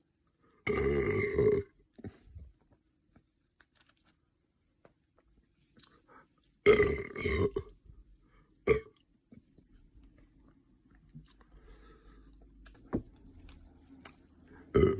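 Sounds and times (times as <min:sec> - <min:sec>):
person burping: 0:00.7 - 0:02.2, 0:06.7 - 0:07.7, 0:08.7 - 0:09.0.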